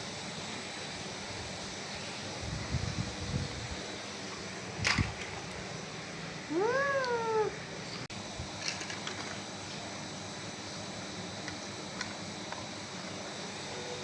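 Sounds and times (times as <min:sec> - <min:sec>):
drawn-out rising falling call: 0:06.5 - 0:07.6.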